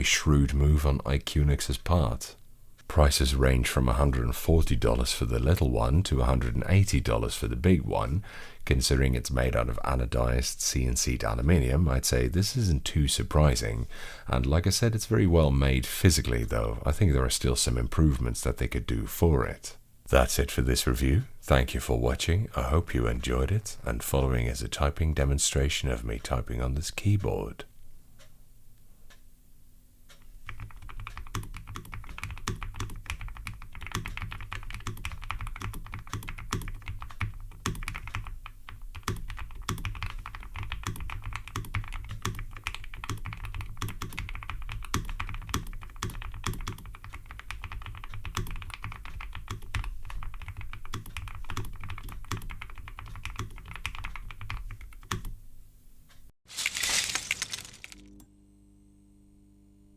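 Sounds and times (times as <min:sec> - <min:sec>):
muffled keyboard typing: 0:30.2 - 0:55.3.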